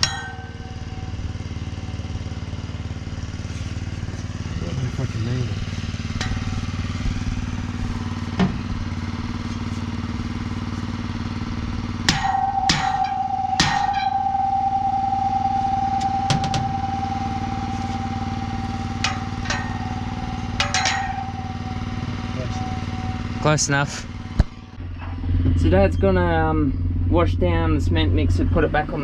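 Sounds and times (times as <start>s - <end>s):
sharp metal clanks: 0.0s - 1.9s, 6.1s - 7.0s, 12.0s - 23.4s
metal ringing tone: 0.0s - 4.2s, 5.9s - 29.0s
engine running: 0.0s - 29.0s.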